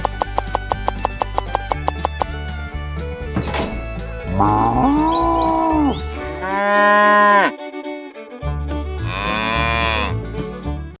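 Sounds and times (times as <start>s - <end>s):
background music beat: 0.0s - 6.8s
cow mooing: 4.4s - 7.5s, 9.0s - 10.2s.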